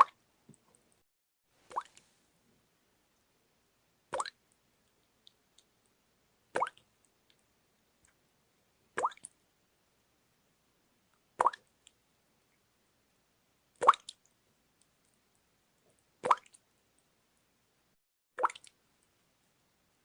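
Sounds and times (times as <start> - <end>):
water drops plopping: 4.2 - 4.4, 11.4 - 11.6, 18.4 - 18.8.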